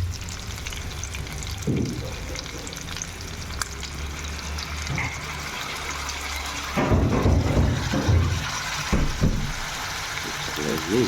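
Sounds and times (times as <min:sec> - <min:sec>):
food sizzling in a pan: 0:00.0 - 0:11.0.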